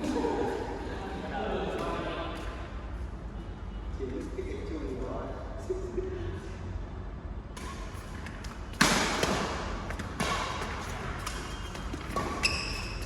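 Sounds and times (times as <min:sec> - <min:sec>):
rackets hitting shuttlecock: 0:07.5 - 0:13.0
shoe squeak: 0:10.2 - 0:13.0.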